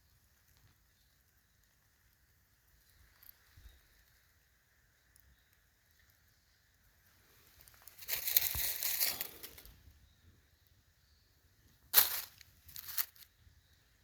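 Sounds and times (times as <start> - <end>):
rustling crunching noise: 7.6 - 9.7, 11.9 - 13.2.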